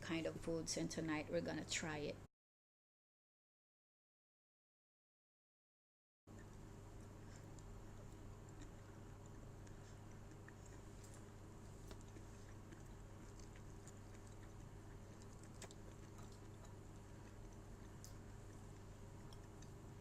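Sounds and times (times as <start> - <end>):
faint chewing: 6.3 - 20.0
steady low hum: 6.3 - 20.0.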